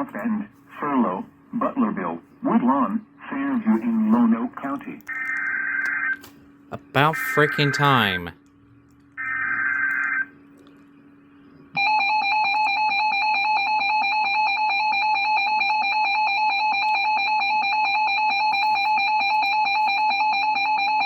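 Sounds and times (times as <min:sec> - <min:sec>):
piercing electronic alert tone: 0:07.0 - 0:08.1.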